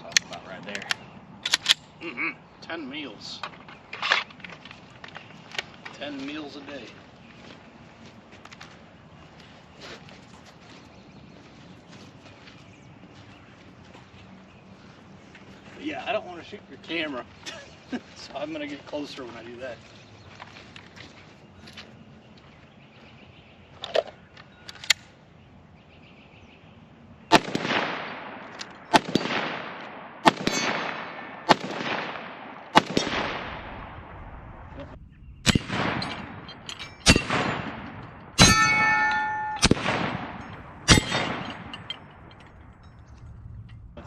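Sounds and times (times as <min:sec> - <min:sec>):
echoing gunshots: 0:27.3 - 0:34.8, 0:35.4 - 0:42.0
steel target ringing: 0:35.5 - 0:37.8, 0:38.4 - 0:42.1.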